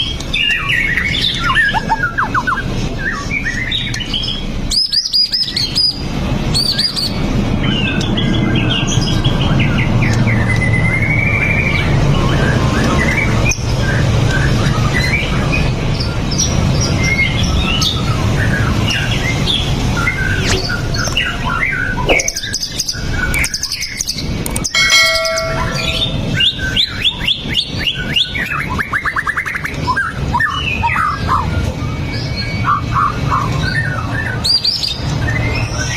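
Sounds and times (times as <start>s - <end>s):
low steady hum: 24.8s - 26.6s.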